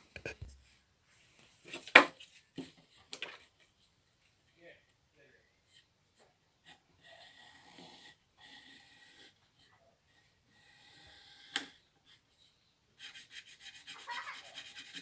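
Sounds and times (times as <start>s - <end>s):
hand tool sawing wood: 13.0s - 15.0s.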